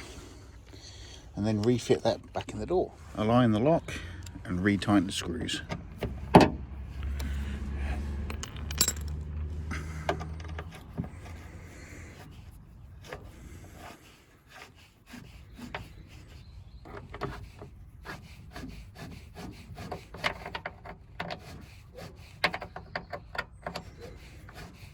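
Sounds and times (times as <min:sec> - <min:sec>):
clicks knocks and rattles of parts: 0:08.2 - 0:11.2.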